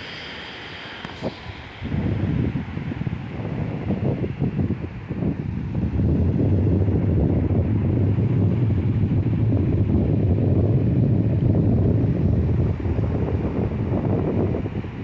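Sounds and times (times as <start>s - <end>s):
sea waves and surf: 0.0s - 9.5s, 11.0s - 15.0s.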